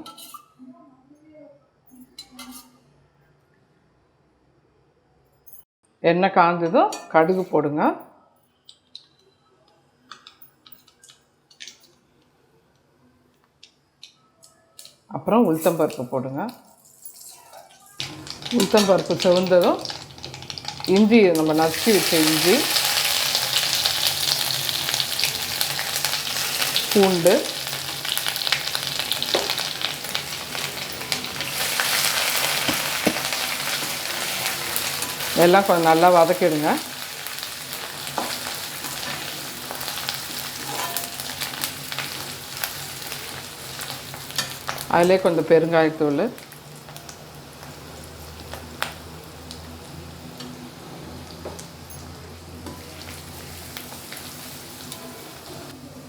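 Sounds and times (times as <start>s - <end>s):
frying sizzle with crackles: 17.2s - 56.0s.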